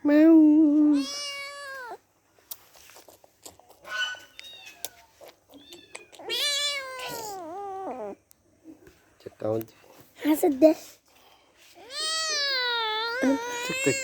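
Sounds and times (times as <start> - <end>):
kittens meowing: 0.9 - 2.0, 4.0 - 8.2, 11.8 - 14.0.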